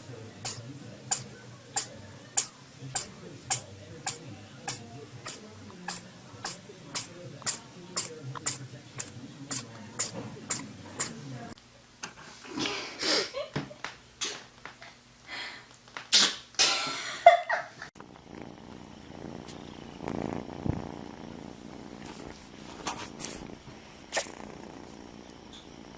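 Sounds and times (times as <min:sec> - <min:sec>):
pet sneezing: 0:16.1 - 0:16.8, 0:24.1 - 0:24.3.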